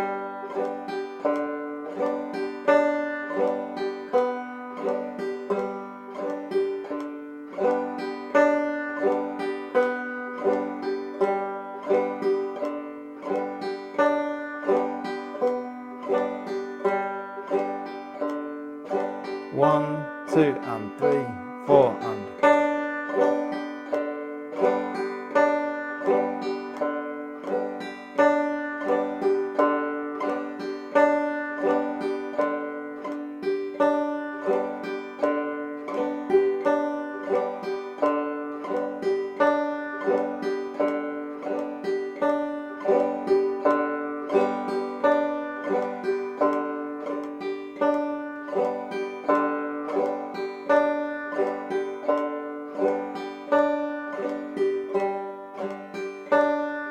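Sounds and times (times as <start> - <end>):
banjo strumming: 0.0 - 56.9.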